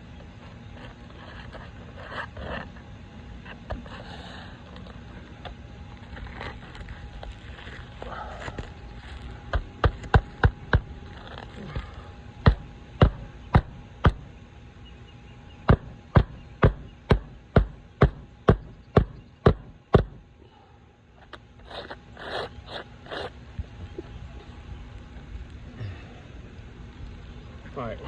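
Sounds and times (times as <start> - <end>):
hammer striking roofing nails: 12.5 - 14.2, 15.7 - 20.2.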